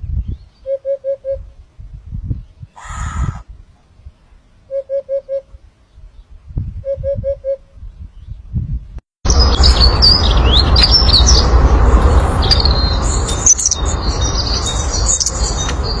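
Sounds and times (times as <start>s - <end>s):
songbird singing: 0.0s - 16.0s
low rumbling noise: 7.6s - 16.0s.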